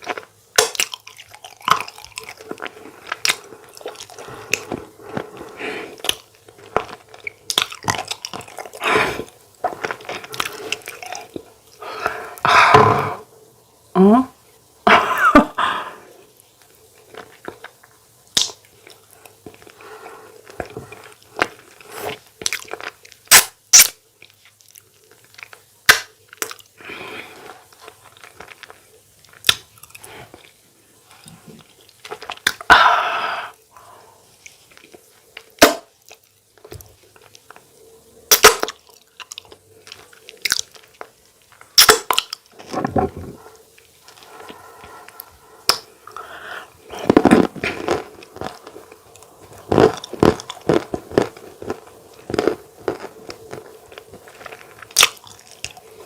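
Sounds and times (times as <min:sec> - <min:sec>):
person chewing and smacking: 0:00.0 - 0:12.2, 0:16.6 - 0:26.8, 0:27.4 - 0:30.6, 0:31.2 - 0:32.7, 0:38.3 - 0:56.0.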